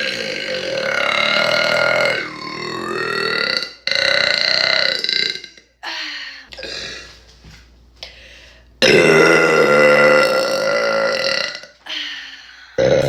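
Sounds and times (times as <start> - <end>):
woman burping: 0.0 - 7.0, 8.8 - 11.8.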